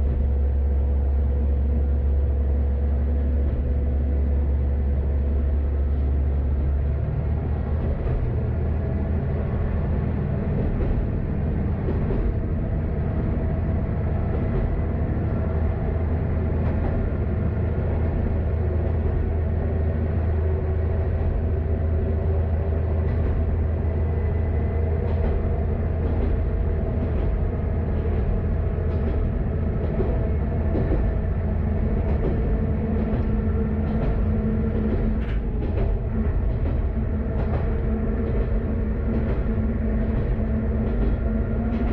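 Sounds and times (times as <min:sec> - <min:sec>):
diesel engine hum: 0:00.0 - 0:41.9
wheels clicking on track: 0:23.0 - 0:41.9.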